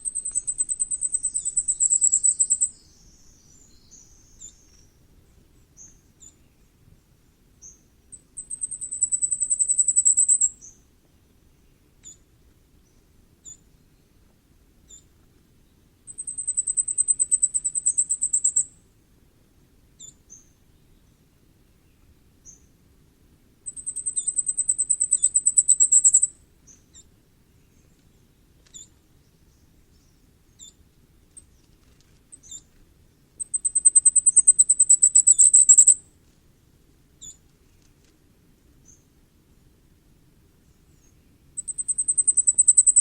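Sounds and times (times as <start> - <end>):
soft bird call notes: 0.0 - 4.9, 8.4 - 10.8, 16.1 - 18.7, 23.7 - 27.0, 33.4 - 36.0, 41.6 - 43.0
bird song of rapid thin notes: 0.0 - 6.8, 7.6 - 14.2, 14.8 - 18.7, 23.7 - 36.0, 37.2 - 38.1, 40.6 - 43.0.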